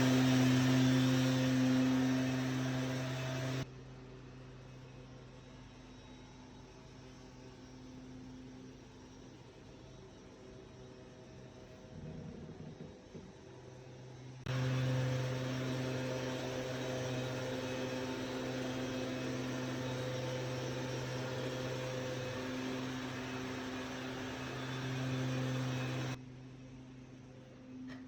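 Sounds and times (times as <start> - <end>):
electric appliance motor humming: 0.0 - 3.7, 14.5 - 26.2.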